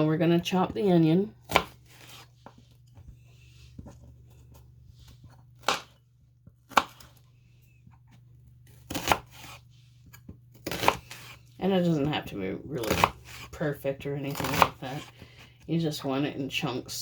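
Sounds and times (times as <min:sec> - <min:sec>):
knife chopping onion on board: 0:01.4 - 0:02.6, 0:05.2 - 0:07.2, 0:08.7 - 0:09.6, 0:10.2 - 0:11.4, 0:12.0 - 0:13.5, 0:14.3 - 0:15.2.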